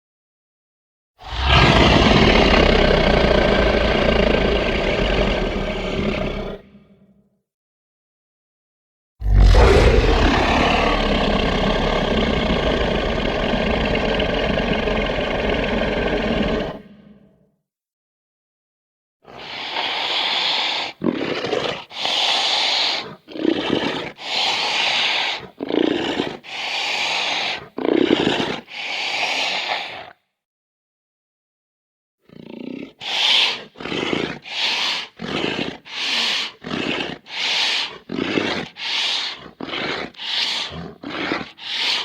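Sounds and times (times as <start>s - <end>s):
cartoon monster roars: 1.2s - 7.0s, 9.2s - 17.4s.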